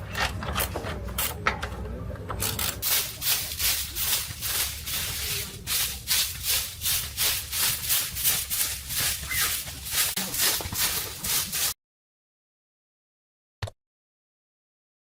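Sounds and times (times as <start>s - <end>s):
abrasive rubbing strokes: 2.8s - 11.8s.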